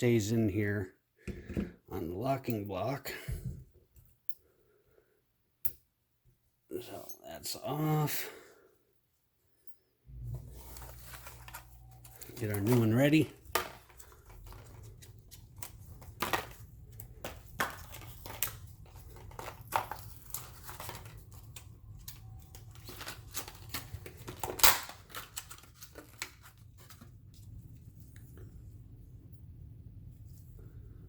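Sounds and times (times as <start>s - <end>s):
low steady hum: 9.6s - 24.5s.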